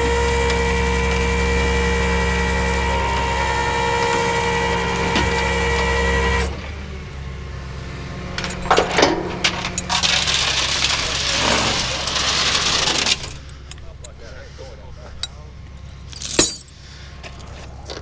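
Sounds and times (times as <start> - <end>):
machine hum with whining tones: 0.0 - 10.4
metal clanks: 8.4 - 18.0.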